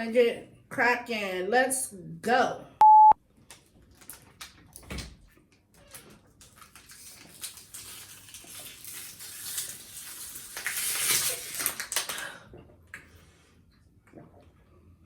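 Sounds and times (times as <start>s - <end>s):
plastic bottle crinkling: 5.9s - 12.3s.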